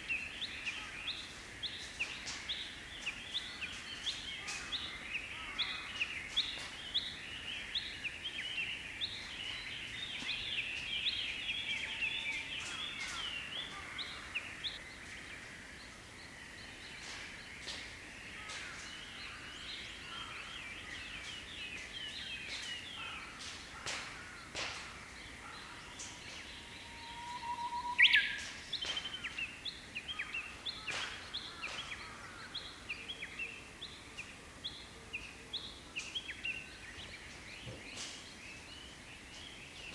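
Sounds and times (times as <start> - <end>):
small birds chirping: 0.0 - 39.9
bush warbler whistled song: 26.4 - 31.2.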